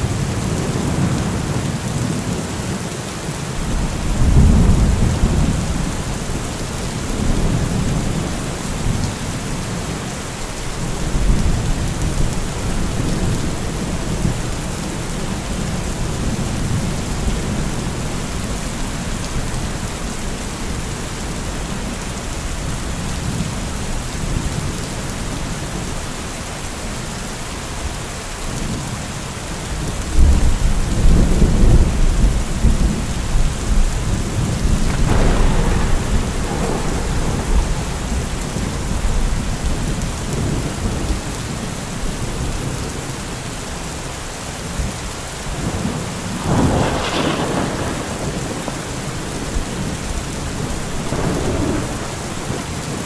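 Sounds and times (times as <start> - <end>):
heavy rain: 0.0 - 53.0
rolling thunder: 3.6 - 9.1, 30.2 - 41.6, 45.5 - 53.0.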